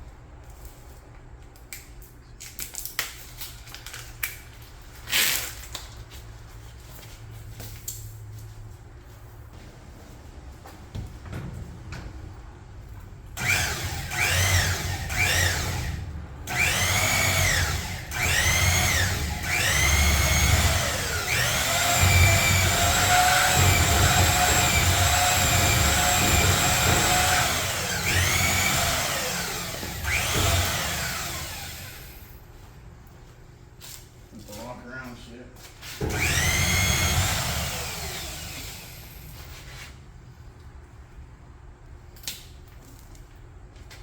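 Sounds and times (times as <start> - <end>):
power drill whining: 13.4 - 32.4, 36.1 - 39.4.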